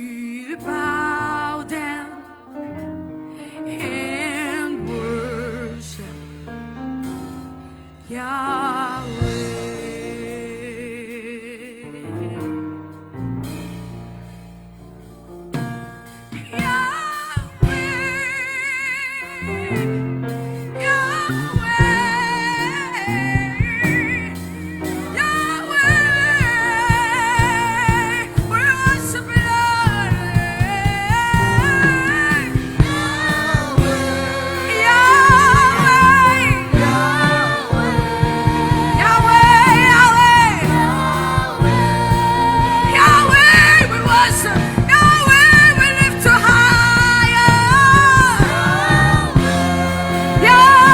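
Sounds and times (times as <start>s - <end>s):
sustained instrumental backing: 19.8s - 50.9s
person singing with vibrato: 20.8s - 50.9s.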